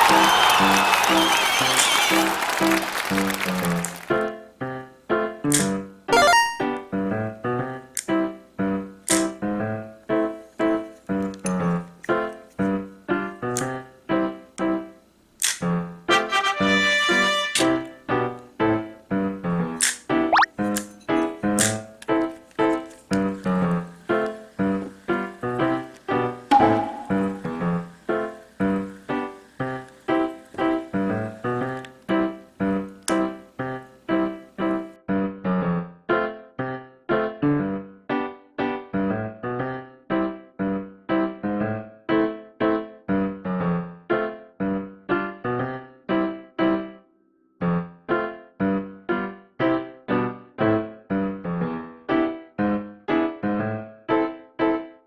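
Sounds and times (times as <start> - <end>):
light keyboard melody: 2.8 - 15.0, 15.7 - 47.2
crisp percussion clicks: 2.9 - 4.4
keyboard melody of struck notes: 6.2 - 6.9, 26.5 - 27.6.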